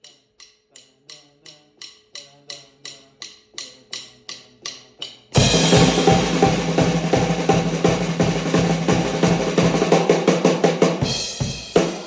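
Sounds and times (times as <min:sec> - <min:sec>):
repeated wood block ticks: 0:00.0 - 0:05.4
band and drum kit: 0:05.4 - 0:12.0.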